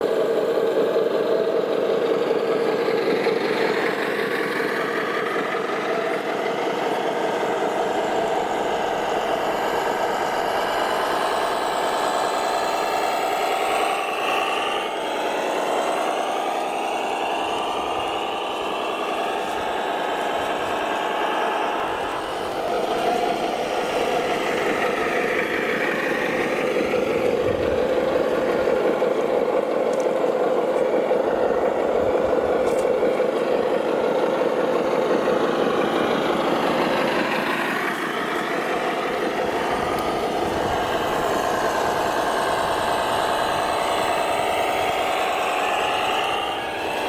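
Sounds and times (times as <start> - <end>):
model truck engine idling: 0.0 - 47.0.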